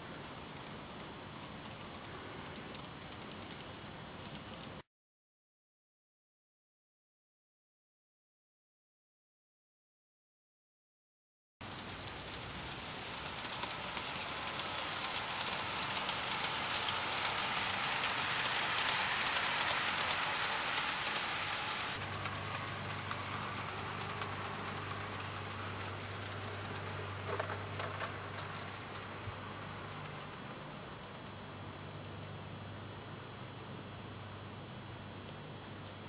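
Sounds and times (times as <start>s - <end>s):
model train wheels clicking on track: 0.0s - 4.8s, 11.6s - 32.2s
steady low hum: 11.6s - 36.0s.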